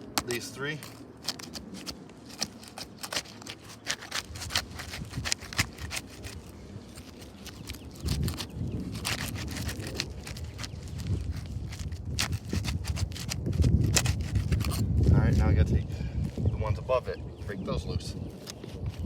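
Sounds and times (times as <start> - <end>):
roof shingles being pried up: 0.0 - 14.8.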